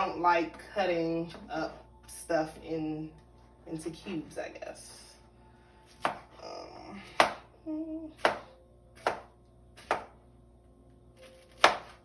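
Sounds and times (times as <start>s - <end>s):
knife chopping on cutting board: 5.9s - 6.3s, 7.2s - 7.5s, 8.2s - 10.2s, 11.2s - 12.0s.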